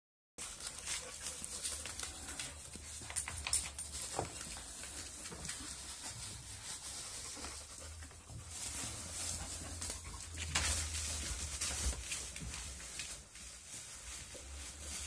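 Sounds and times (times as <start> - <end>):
puppies scuffling: 0.4 - 15.0
puppy panting: 4.5 - 10.6.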